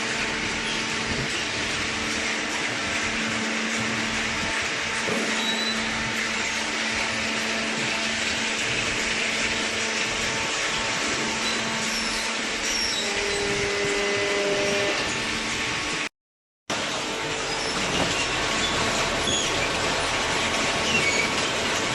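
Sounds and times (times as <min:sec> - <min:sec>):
motor hum: 0:00.0 - 0:16.1.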